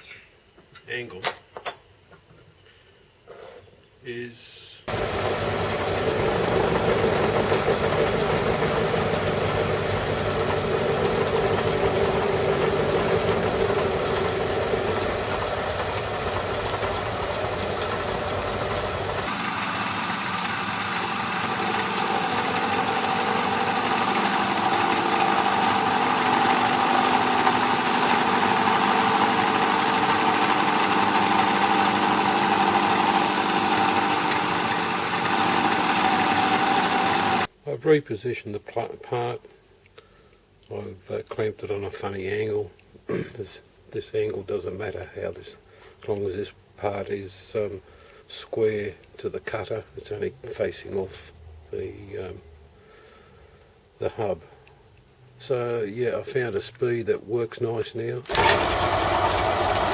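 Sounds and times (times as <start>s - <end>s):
metal lathe running: 4.9s - 37.5s, 58.3s - 59.9s.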